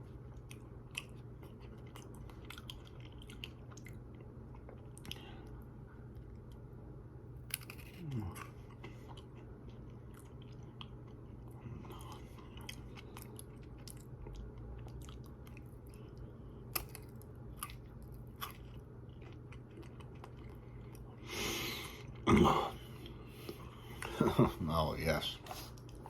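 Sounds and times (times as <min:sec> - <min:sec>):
chewing crisp biscuit crunches: 0:00.3 - 0:05.5, 0:07.4 - 0:21.2.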